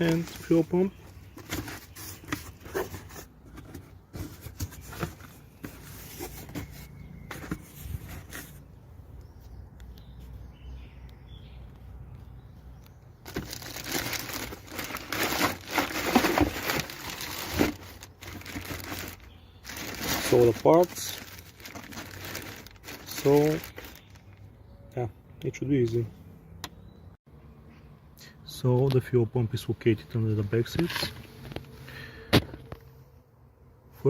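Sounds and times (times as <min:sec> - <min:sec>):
crinkling and crackling: 0:00.0 - 0:08.6, 0:13.2 - 0:24.4.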